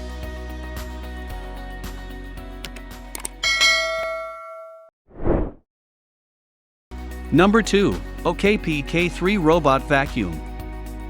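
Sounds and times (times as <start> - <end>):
bell-like chime ringing: 3.4 - 4.9.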